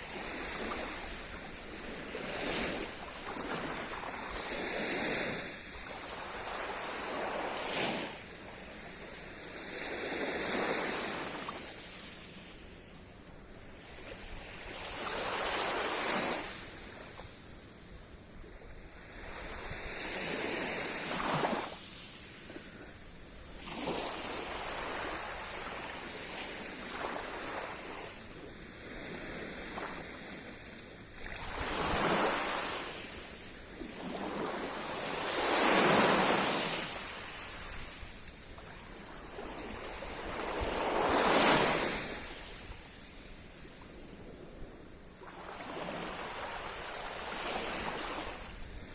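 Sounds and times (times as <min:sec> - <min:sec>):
waves breaking on shore: 0:00.0 - 0:17.3, 0:18.6 - 0:48.9.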